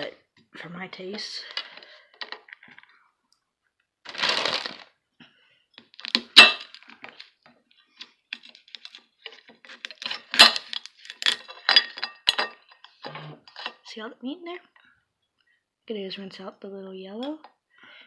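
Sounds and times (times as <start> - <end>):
crab shell cracking: 9.7 - 11.4.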